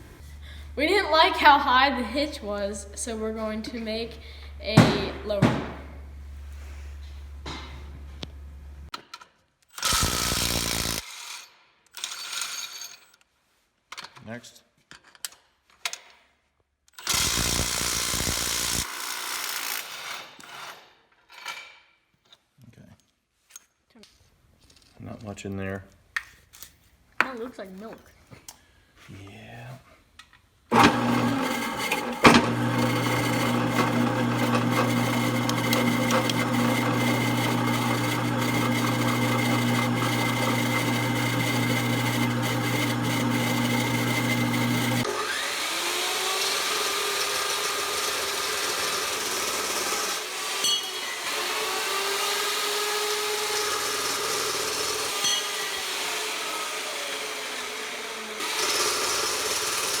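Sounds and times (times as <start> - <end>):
electric power tool running: 9.8 - 11.0, 30.7 - 60.0.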